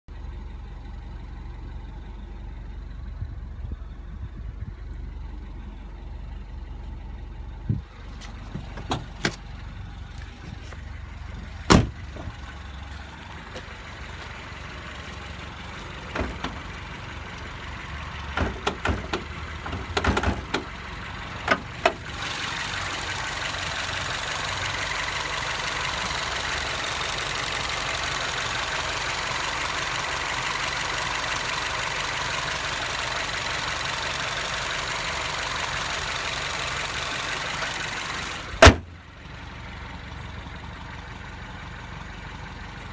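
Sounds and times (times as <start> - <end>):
car engine idling with ticking: 0.1 - 42.9
sharp clicks and knocks: 18.4 - 20.7.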